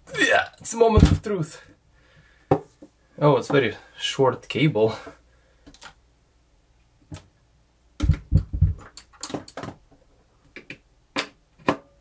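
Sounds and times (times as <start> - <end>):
heavier thumps: 0.9 - 1.4, 8.0 - 8.8.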